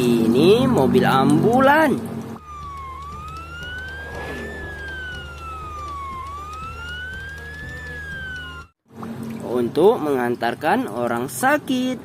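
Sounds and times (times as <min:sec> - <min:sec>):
steady low hum: 0:02.4 - 0:08.6
ambulance siren wailing: 0:02.4 - 0:08.8.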